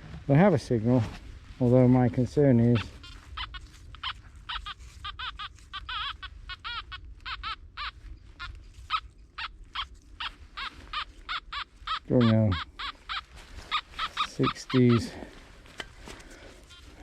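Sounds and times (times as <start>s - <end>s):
metal detector chirping tones: 2.8s - 15.2s.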